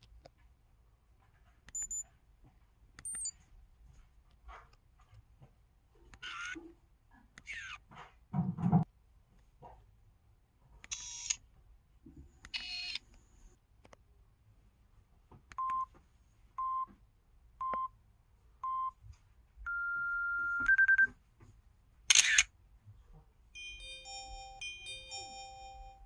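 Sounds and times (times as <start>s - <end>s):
camera shutter click: 10.9s - 11.4s, 22.1s - 22.5s
electronic chime melody: 23.6s - 26.0s.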